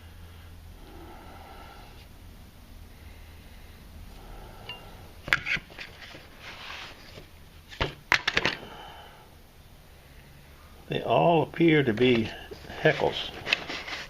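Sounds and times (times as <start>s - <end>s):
scraping rustle: 5.5s - 7.8s, 11.9s - 14.0s.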